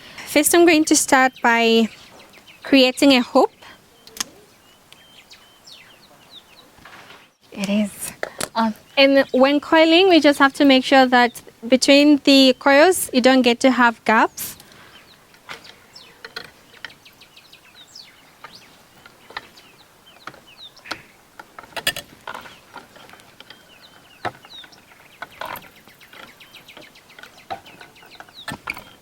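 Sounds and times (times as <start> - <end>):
birds chirping: 0.0 - 29.0
wire clicking and scraping: 14.5 - 17.0, 18.3 - 29.0.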